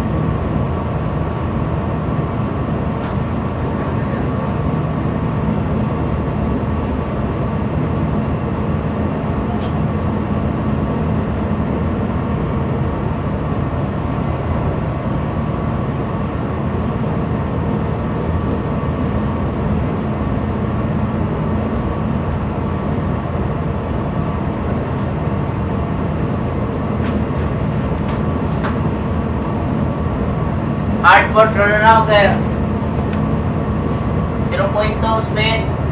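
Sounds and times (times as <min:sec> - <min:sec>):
ship engines droning: 0:00.0 - 0:35.9.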